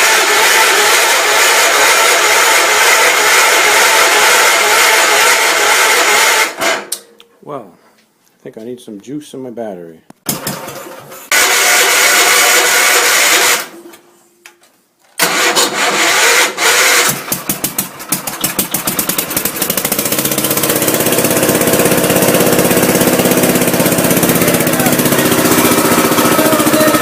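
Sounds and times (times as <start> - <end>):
single-cylinder engine running: 0.0 - 6.6, 15.2 - 27.0
electric starter cranking: 0.0 - 7.0, 10.3 - 13.8, 15.2 - 27.0.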